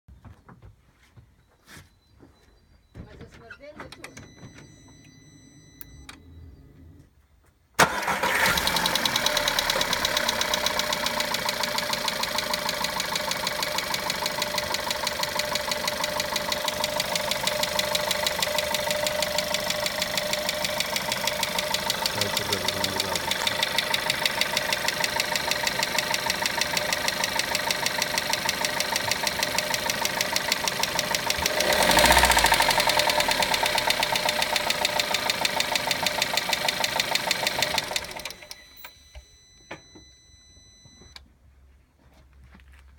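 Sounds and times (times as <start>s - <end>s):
faint high electronic beep: 2.0s - 7.0s, 38.4s - 41.2s
engine revving: 7.8s - 38.4s
car engine starting: 7.8s - 39.0s
engine idling with rapid clicking: 7.8s - 39.0s.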